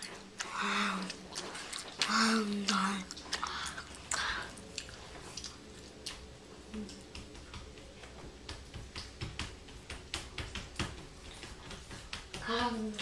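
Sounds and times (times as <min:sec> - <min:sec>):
gum chewing with wet smacks: 0:00.0 - 0:07.7.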